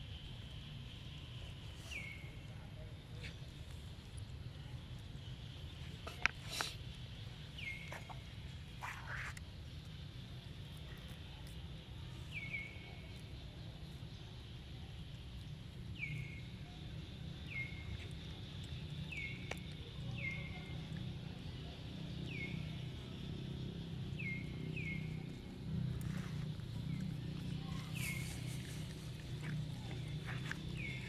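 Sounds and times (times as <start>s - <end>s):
steady low rumble: 11.9s - 31.0s.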